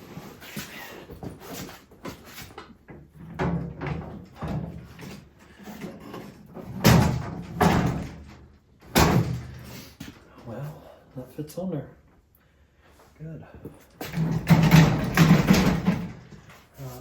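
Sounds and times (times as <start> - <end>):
metal clunks on steel cart: 14.1 - 16.3.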